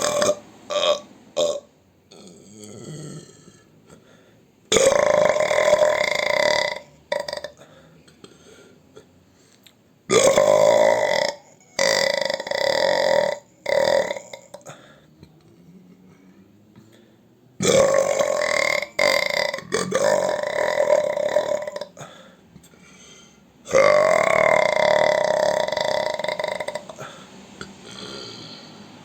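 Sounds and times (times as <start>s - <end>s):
person belching: 0.0s - 4.0s, 4.7s - 8.4s, 10.1s - 14.8s, 17.6s - 22.3s, 23.6s - 28.7s.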